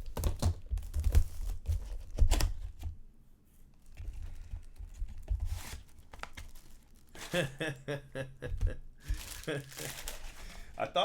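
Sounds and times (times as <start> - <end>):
cards rustling: 3.9 - 7.5, 9.0 - 10.8
packaging tearing: 4.2 - 7.5, 9.1 - 10.7.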